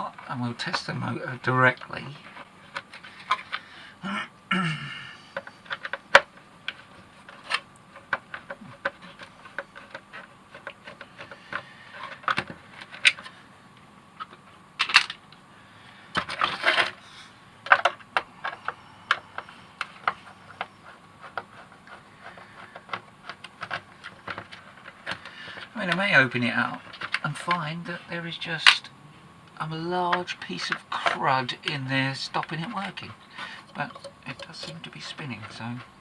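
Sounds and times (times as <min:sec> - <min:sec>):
plastic parts clicking and knocking: 0:05.4 - 0:13.3, 0:14.2 - 0:15.2, 0:16.1 - 0:17.0, 0:17.6 - 0:25.7, 0:26.8 - 0:27.6, 0:32.4 - 0:35.9.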